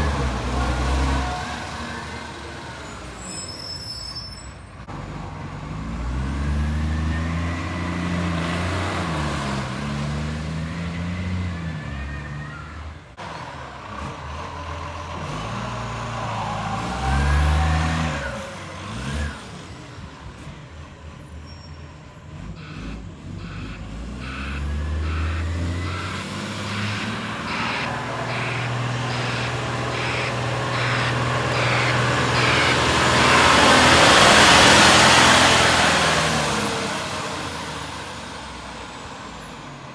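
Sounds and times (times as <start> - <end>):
diesel engine revving: 0.0 - 39.9
exhaust leak blatting: 25.8 - 36.4.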